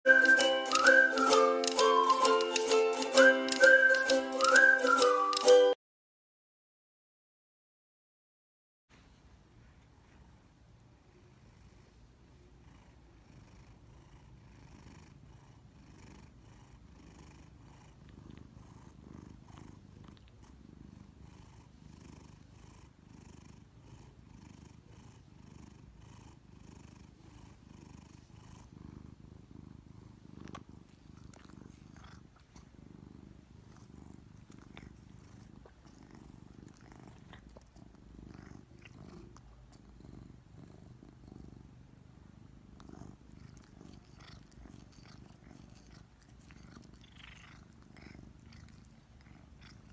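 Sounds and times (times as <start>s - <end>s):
cat purring: 10.0s - 49.9s.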